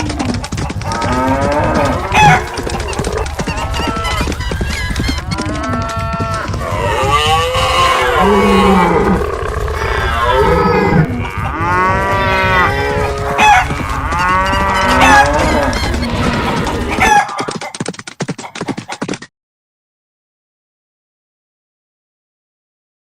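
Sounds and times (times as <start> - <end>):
running herd rumble: 0.0 - 17.0
cattle mooing: 0.8 - 4.3, 5.2 - 17.0.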